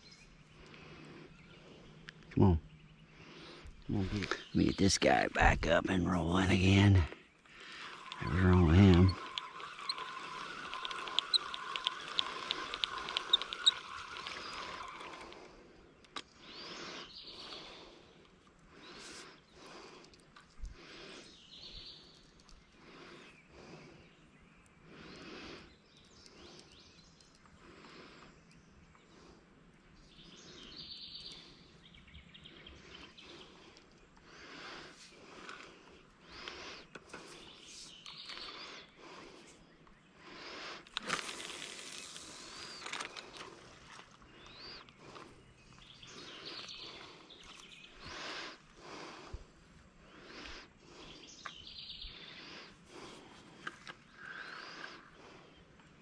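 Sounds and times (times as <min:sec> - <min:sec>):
outdoor background hiss: 0:00.0 - 0:56.0
faint bird trills: 0:07.4 - 0:15.4
fishing reel cranking: 0:07.5 - 0:15.6, 0:40.8 - 0:44.2.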